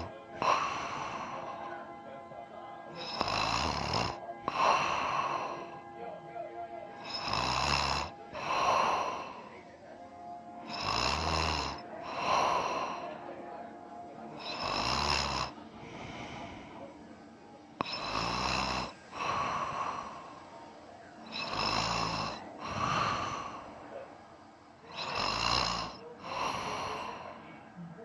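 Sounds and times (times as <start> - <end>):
man snoring: 0.0 - 1.8, 2.9 - 5.8, 6.9 - 9.6, 10.6 - 13.2, 14.4 - 16.8, 17.8 - 20.4, 21.2 - 23.9, 24.9 - 27.4.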